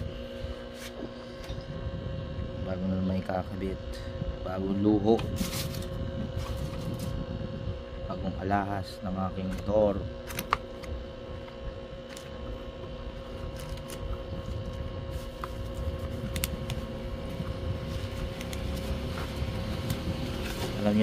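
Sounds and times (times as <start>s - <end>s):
low background hum: 0.0s - 21.0s
packaging rustling: 13.2s - 20.9s.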